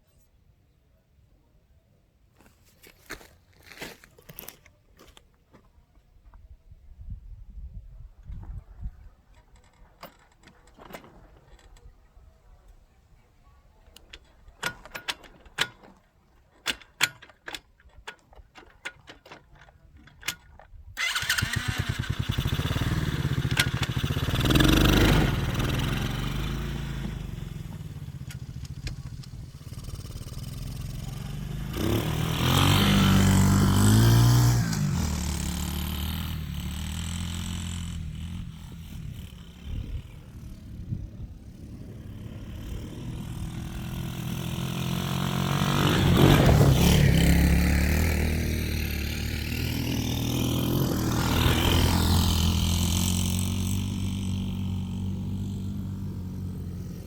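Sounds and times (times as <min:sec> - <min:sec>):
atv engine starting and revving: 0:20.1 - 0:57.0.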